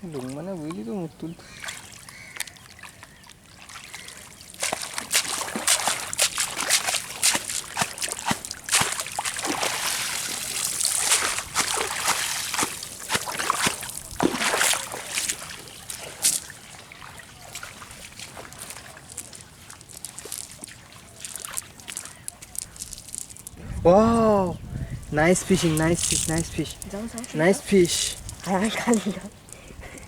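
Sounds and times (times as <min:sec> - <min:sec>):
water dripping: 0:00.0 - 0:23.6, 0:25.2 - 0:30.0
water splashing and sloshing: 0:00.0 - 0:23.7, 0:25.1 - 0:30.0.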